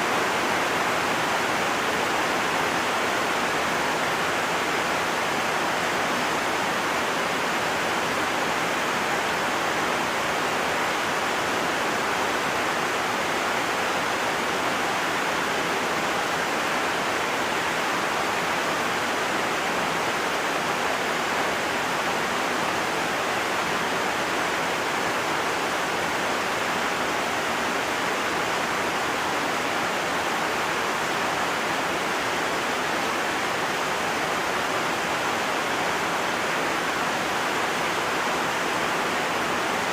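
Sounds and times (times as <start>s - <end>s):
heavy rain falling: 0.0s - 39.9s.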